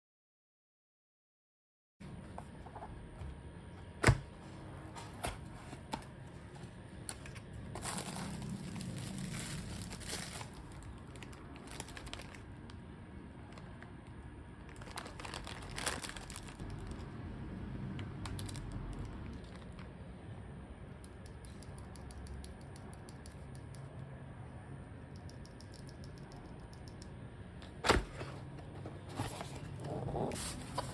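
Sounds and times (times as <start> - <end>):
plastic packaging crinkling: 7.2 - 12.8, 14.6 - 17.0
packaging tearing: 7.8 - 12.4, 14.7 - 16.8.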